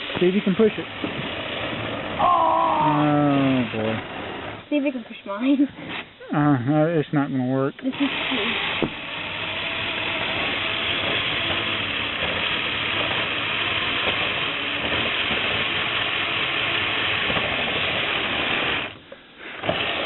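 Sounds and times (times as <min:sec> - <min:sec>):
electric motors whining: 0:00.0 - 0:05.1, 0:07.8 - 0:20.0.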